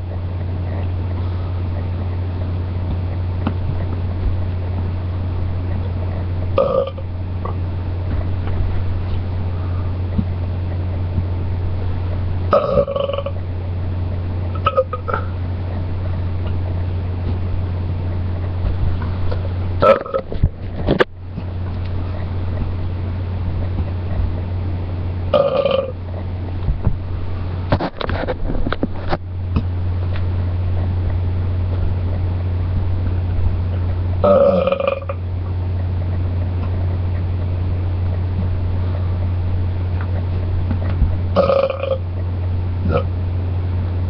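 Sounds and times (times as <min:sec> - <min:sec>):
steady low hum: 0:00.0 - 0:44.0
person belching: 0:06.6 - 0:07.0, 0:12.5 - 0:13.4, 0:14.6 - 0:15.3, 0:19.8 - 0:20.2, 0:25.3 - 0:25.9, 0:34.2 - 0:35.2, 0:41.4 - 0:42.0, 0:42.9 - 0:43.1.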